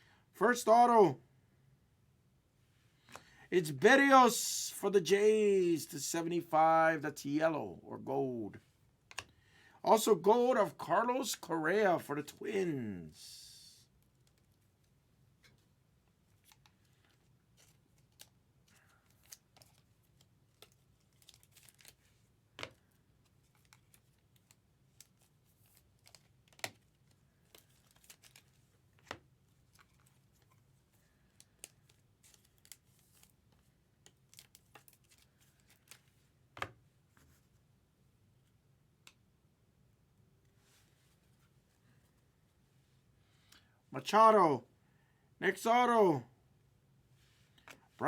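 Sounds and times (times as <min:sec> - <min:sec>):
cards shuffling and sliding: 0:16.3 - 0:37.6.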